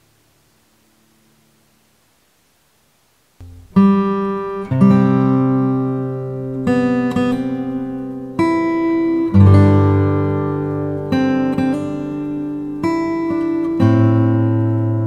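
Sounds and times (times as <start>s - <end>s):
acoustic guitar chords: 3.4s - 15.0s.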